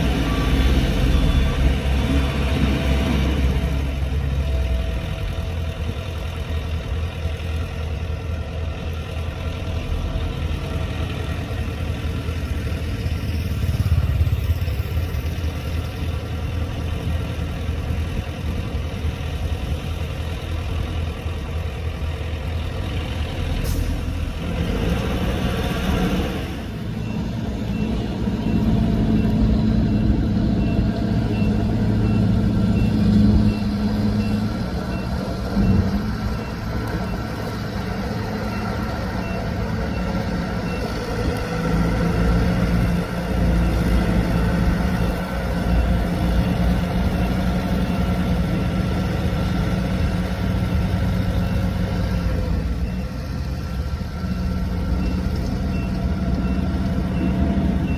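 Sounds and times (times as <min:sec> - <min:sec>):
reversing alarm beeping: 0:00.0 - 0:07.3, 0:26.6 - 0:48.3, 0:51.1 - 0:57.9
heavy diesel engines rumbling: 0:00.0 - 0:57.9.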